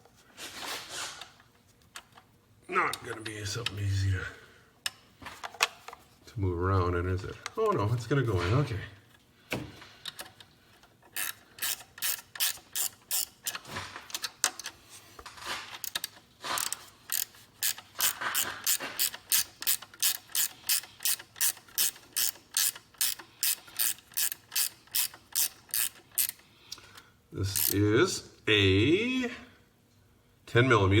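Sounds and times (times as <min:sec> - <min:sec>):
socket ratchet clicking: 0:11.1 - 0:14.8, 0:15.8 - 0:26.4, 0:27.5 - 0:27.8.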